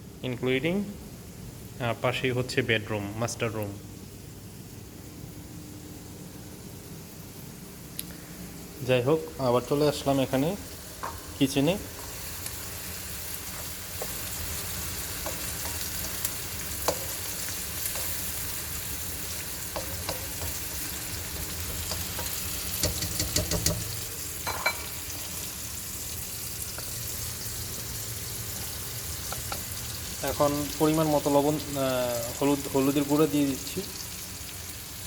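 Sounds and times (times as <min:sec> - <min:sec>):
vegetables sizzling in oil: 0:09.2 - 0:35.0
utensil clicking against pan: 0:19.7 - 0:20.7, 0:21.6 - 0:23.9.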